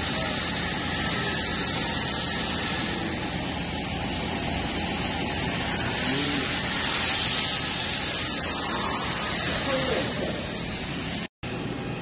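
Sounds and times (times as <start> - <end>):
machining center hissing: 5.4 - 11.2.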